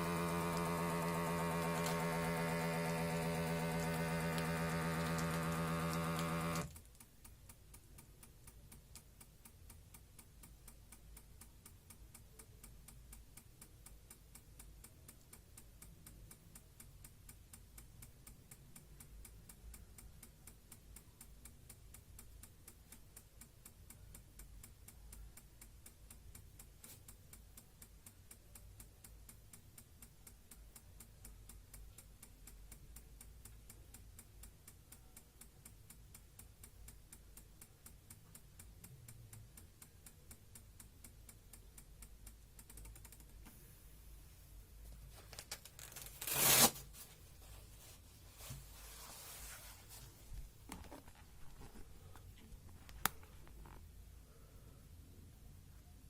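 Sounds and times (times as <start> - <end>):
faint rapid ticking: 0.0 - 43.5
click: 0.0 - 43.6, 50.7 - 53.9.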